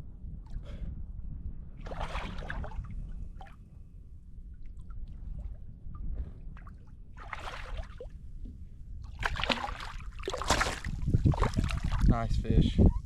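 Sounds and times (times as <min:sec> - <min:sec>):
wind rumble on microphone: 0:00.0 - 0:13.0
water splashing against kayak: 0:01.8 - 0:03.6, 0:06.2 - 0:12.2.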